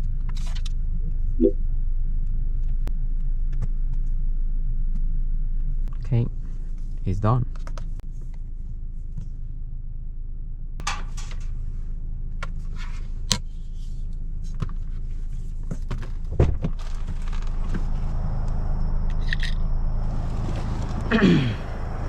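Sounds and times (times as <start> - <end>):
low vehicle hum: 0.0 - 22.0.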